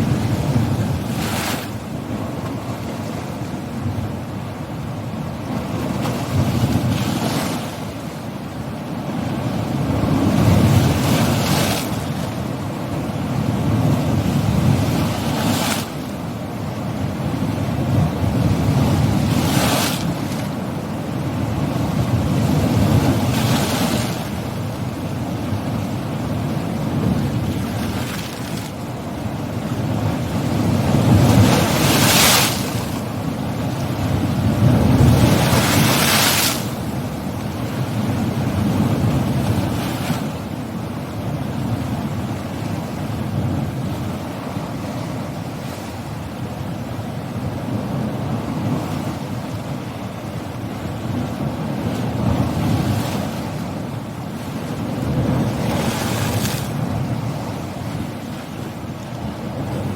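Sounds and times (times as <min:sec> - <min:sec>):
big waves crashing: 0:00.0 - 0:59.9
surf rushing on shore: 0:00.0 - 0:59.9.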